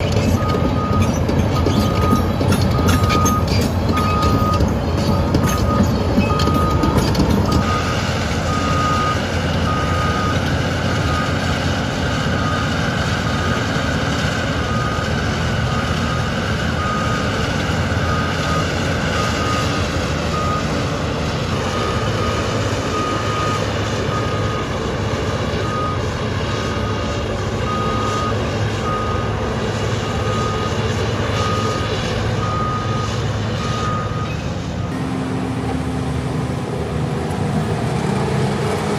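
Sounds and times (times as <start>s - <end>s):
diesel excavator engine: 0.0s - 38.9s
reversing alarm beeping: 0.1s - 11.6s, 12.3s - 14.0s, 14.6s - 24.9s, 25.6s - 29.4s, 30.0s - 35.1s.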